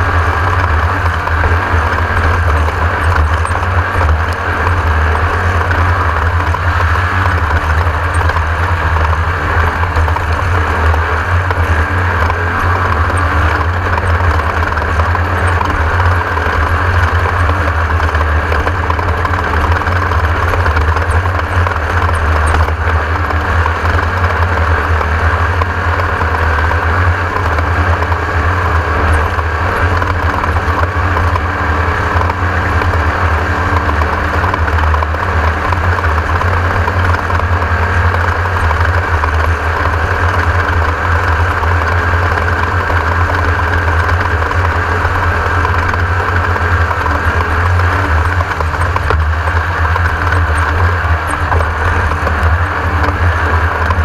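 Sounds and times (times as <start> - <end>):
race car engine running: 0.0 - 54.0
rattle: 0.0 - 54.0.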